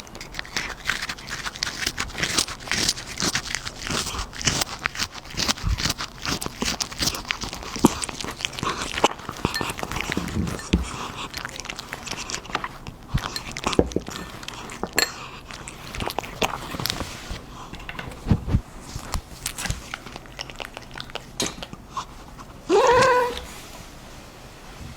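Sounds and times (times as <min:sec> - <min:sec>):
cat chewing food: 0:00.0 - 0:22.7
cat rising call: 0:22.7 - 0:23.6.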